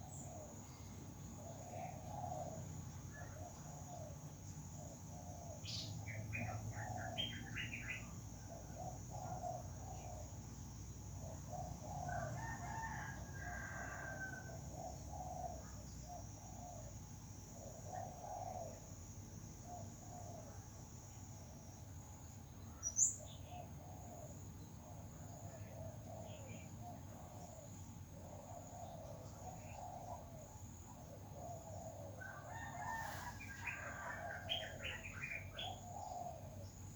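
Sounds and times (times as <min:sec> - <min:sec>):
high insect whine: 0:00.0 - 0:36.9
rooster crowing: 0:12.0 - 0:14.6, 0:32.2 - 0:35.1
soft bird calls: 0:31.0 - 0:36.9.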